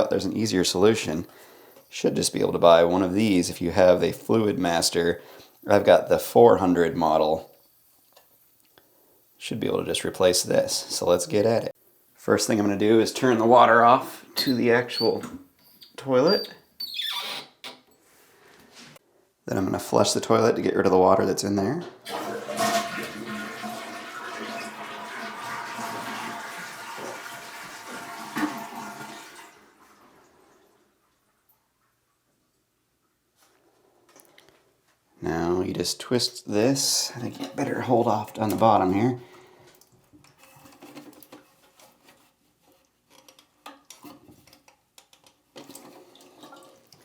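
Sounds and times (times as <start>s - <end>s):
toilet flushing: 22.0s - 30.8s
water splash: 22.1s - 30.0s
plastic parts clicking and rattling: 39.8s - 47.0s.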